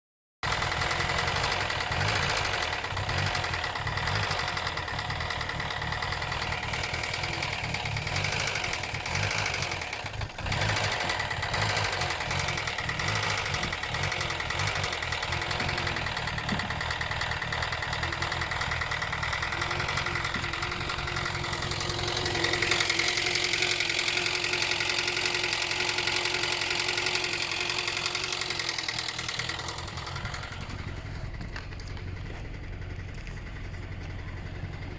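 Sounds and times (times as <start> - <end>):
car engine knocking: 0.4 - 34.9.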